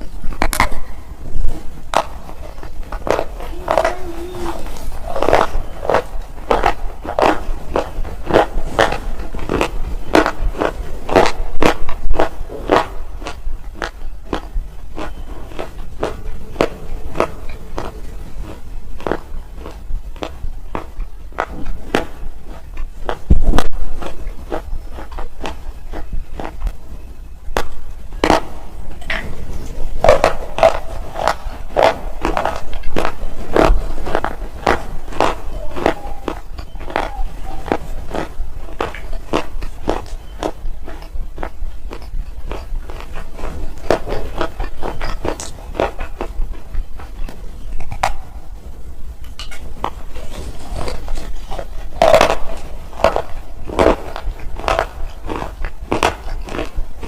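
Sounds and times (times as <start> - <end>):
slate chips crunching between teeth: 4.9 - 26.6, 30.0 - 46.4, 50.6 - 56.8.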